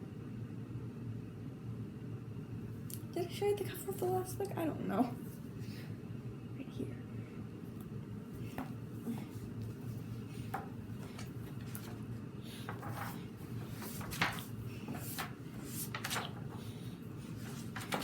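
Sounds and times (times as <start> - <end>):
low room hum: 0.0 - 18.0
book pages rustling and knocking: 8.5 - 9.4, 10.3 - 12.0, 12.6 - 18.0.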